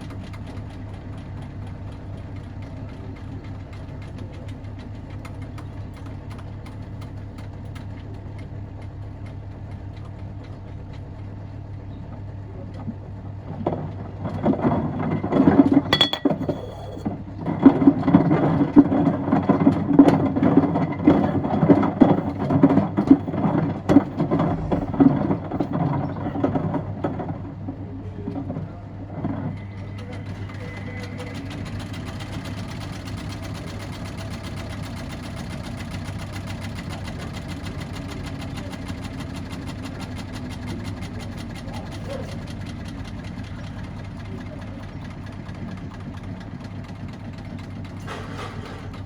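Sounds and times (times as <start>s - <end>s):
washing machine motor hum: 0.0s - 49.0s
stones knocking in drum: 14.5s - 17.0s.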